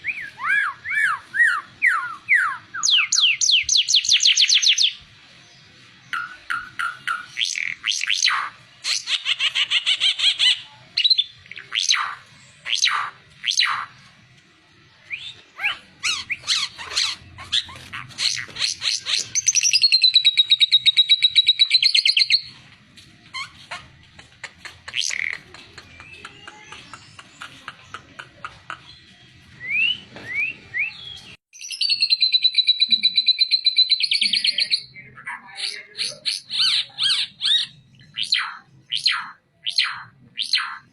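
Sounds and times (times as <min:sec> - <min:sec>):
songbird singing: 0:00.0 - 0:40.9.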